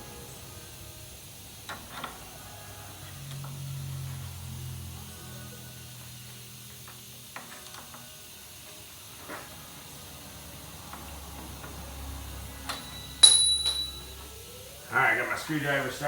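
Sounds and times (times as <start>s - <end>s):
sharp metallic clank ringing: 12.7s - 14.6s.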